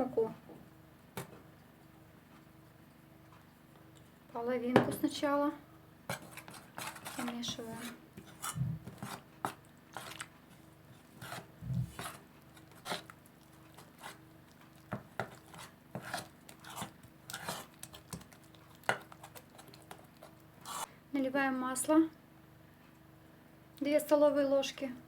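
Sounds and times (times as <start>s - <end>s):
utensil clinking and scraping bowl: 6.1s - 20.9s.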